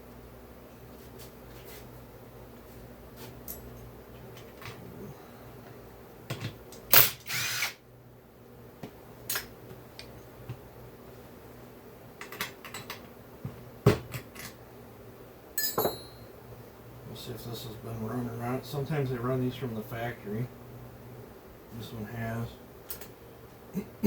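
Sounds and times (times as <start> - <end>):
tools clanking on metal parts: 15.6 - 16.2.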